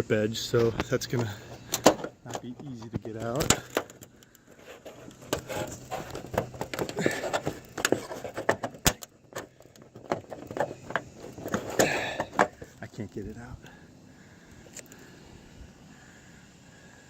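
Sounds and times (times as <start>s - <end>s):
metallic clicks and scraping: 0.5s - 12.8s.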